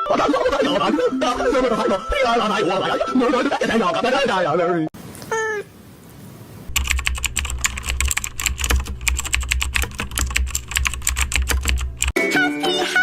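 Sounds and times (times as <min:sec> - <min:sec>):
rapid typing on keyboard: 0:06.7 - 0:12.2.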